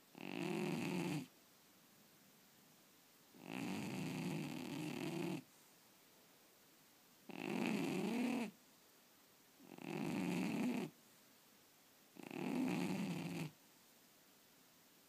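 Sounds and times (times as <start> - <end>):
cat snoring: 0.1 - 1.3, 3.4 - 5.4, 7.3 - 8.6, 9.6 - 11.0, 12.2 - 13.6.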